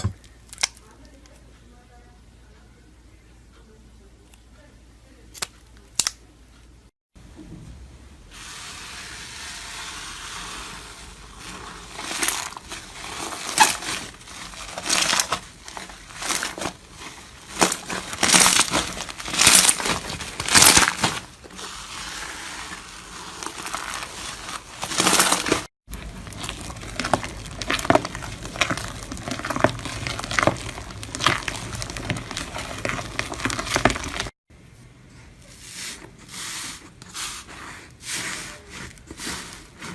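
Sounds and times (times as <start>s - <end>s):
slime crackling and popping: 25.9s - 34.3s.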